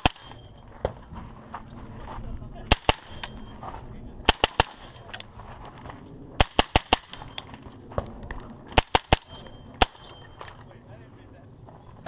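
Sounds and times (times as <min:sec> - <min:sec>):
rifle shots: 0:00.0 - 0:00.5, 0:02.7 - 0:03.5, 0:04.3 - 0:05.3, 0:06.4 - 0:07.5, 0:08.7 - 0:10.5.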